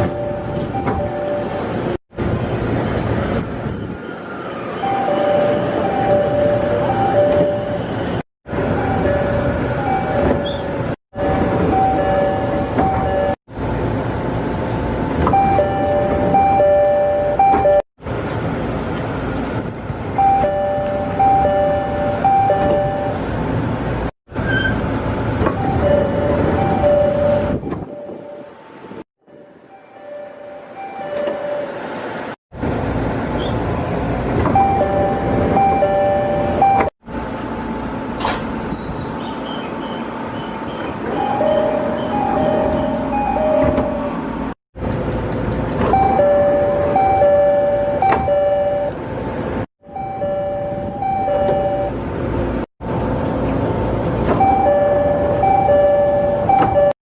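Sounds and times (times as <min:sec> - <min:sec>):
train and station noise: 0:00.0 - 0:56.9
two-tone door chime: 0:41.2 - 0:44.1, 0:50.0 - 0:51.9.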